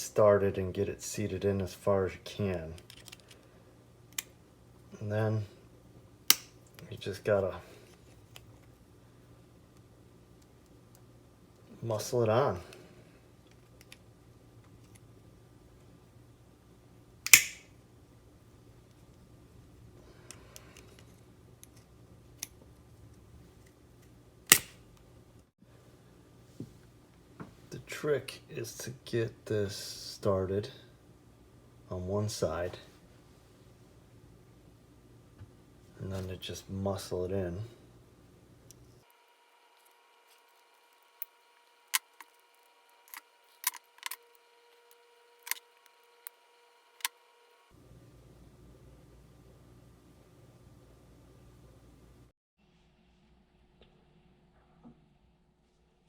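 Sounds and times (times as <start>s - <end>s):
plastic parts clicking and snapping: 2.8s - 3.5s, 6.3s - 6.8s, 17.3s - 17.7s, 24.5s - 24.8s, 39.8s - 46.4s
loud sharp snap: 6.3s - 6.6s, 17.3s - 17.7s, 24.5s - 24.8s.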